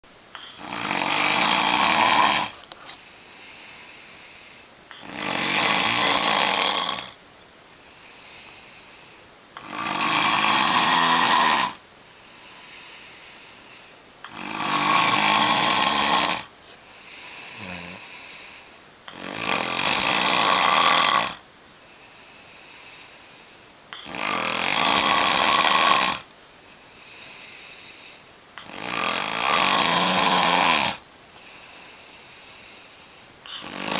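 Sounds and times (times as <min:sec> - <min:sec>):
quiet breathing: 0:00.2 - 0:05.2, 0:06.0 - 0:09.9, 0:11.0 - 0:19.3, 0:21.3 - 0:33.9
man snoring: 0:00.4 - 0:02.7, 0:03.5 - 0:07.2, 0:08.0 - 0:11.8, 0:12.4 - 0:21.4, 0:22.4 - 0:26.3, 0:27.0 - 0:33.9.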